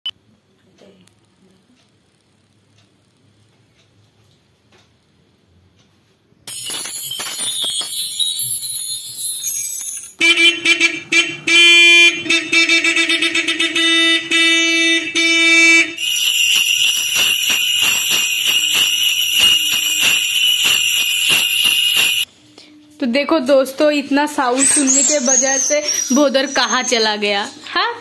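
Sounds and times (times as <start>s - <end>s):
shrill ringing alarm: 6.5s - 10.4s, 13.8s - 22.3s, 24.6s - 27.5s
horn honking: 10.2s - 22.2s.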